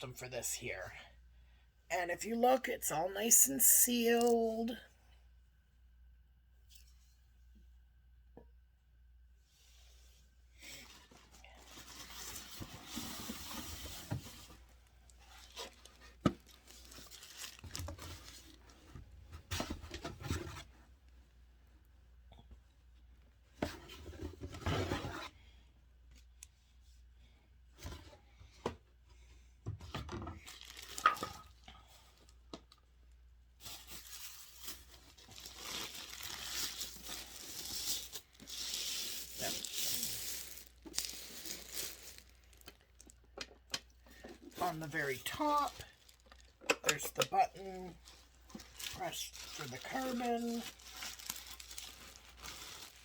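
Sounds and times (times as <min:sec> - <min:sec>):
packaging tearing and crinkling: 0:15.4 - 0:18.6, 0:30.5 - 0:31.4, 0:33.6 - 0:43.1, 0:44.7 - 0:47.3, 0:48.0 - 0:53.0.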